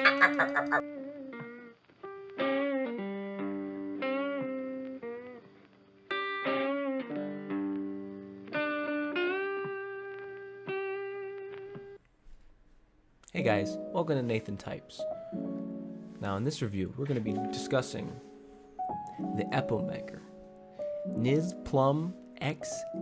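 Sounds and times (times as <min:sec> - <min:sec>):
solo guitar plucked melody: 0:00.8 - 0:12.0.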